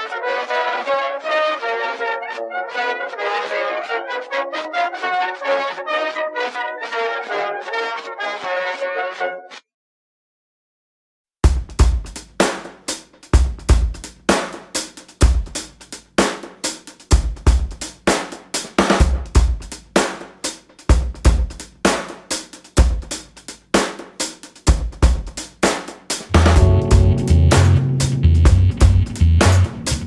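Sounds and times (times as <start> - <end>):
drum kit beat: 11.4 - 30.0.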